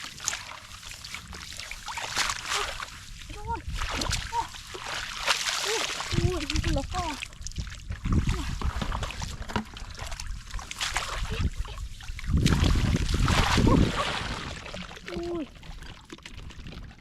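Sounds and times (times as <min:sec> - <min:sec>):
water sloshing and splashing: 0:00.0 - 0:17.0
wind on microphone: 0:06.1 - 0:09.5, 0:10.2 - 0:15.3.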